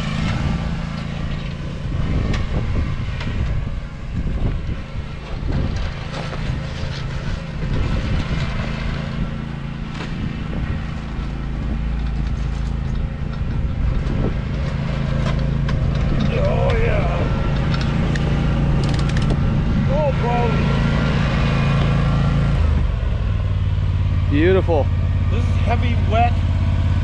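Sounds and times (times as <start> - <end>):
mower engine running: 0.0 - 27.0
machine rattles and knocks: 17.5 - 19.5.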